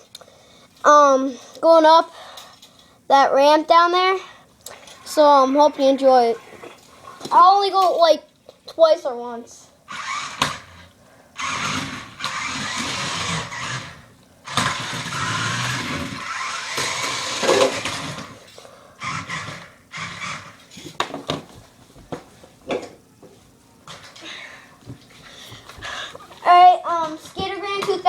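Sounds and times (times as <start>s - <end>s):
remote-control car motor: 9.9s - 10.8s, 11.4s - 18.4s, 19.0s - 20.8s.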